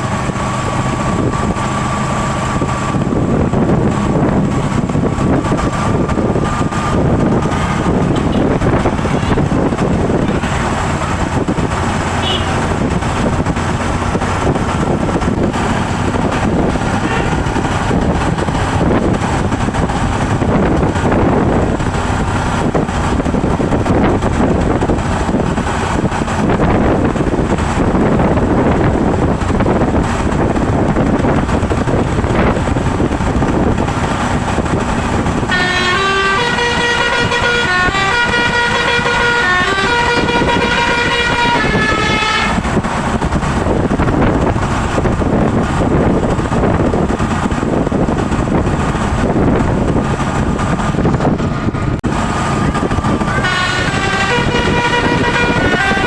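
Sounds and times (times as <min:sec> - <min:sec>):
road and wind noise: 0:00.0 - 0:56.0
bus horn playing melody: 0:07.2 - 0:13.2, 0:16.0 - 0:18.2, 0:35.3 - 0:42.9, 0:52.8 - 0:56.0
single horn tones: 0:12.2 - 0:12.7, 0:35.5 - 0:42.6, 0:53.2 - 0:56.0.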